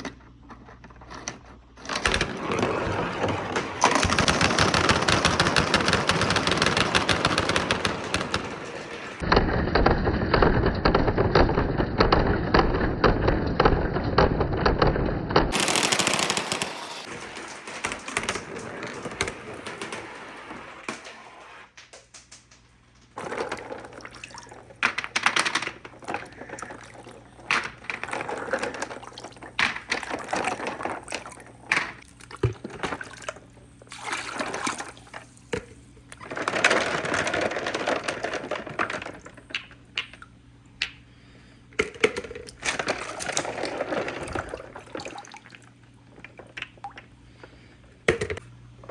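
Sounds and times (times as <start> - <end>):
marbles rattling down wooden run: 2.2 - 9.2, 15.5 - 20.8.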